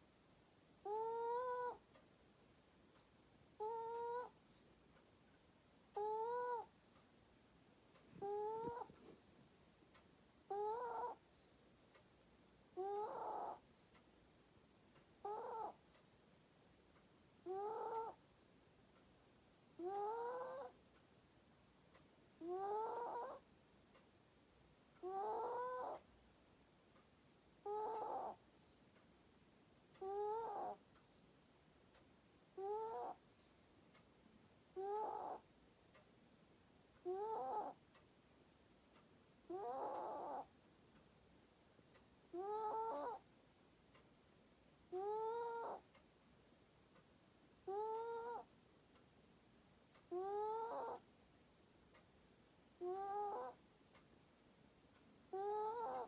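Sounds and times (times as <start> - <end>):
pet snoring with whistling squeak: 12.8 - 13.6, 22.6 - 23.4, 25.1 - 26.0, 37.1 - 37.8, 39.6 - 40.5, 42.4 - 43.2, 50.2 - 51.0, 52.9 - 53.6, 55.4 - 56.0.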